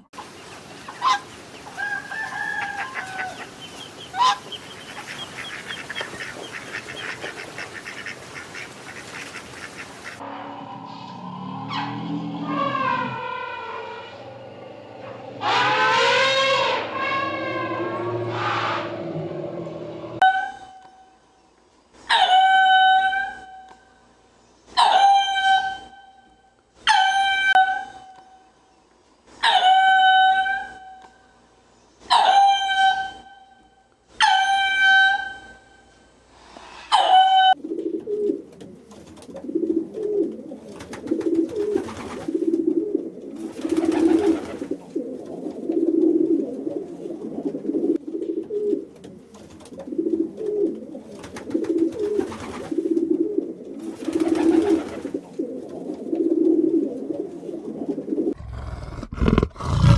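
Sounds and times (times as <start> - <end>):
low rhythmic dove cooing: 1.1 - 13.2, 37.3 - 59.9
high-pitched animal calls: 10.0 - 20.4.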